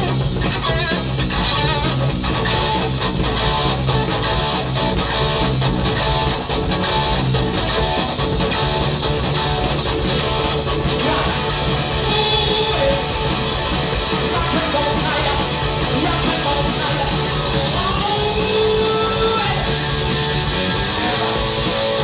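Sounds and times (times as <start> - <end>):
electric guitar: 0.0 - 22.0
live rock band: 0.0 - 22.0
person singing: 10.9 - 13.2, 14.2 - 19.8.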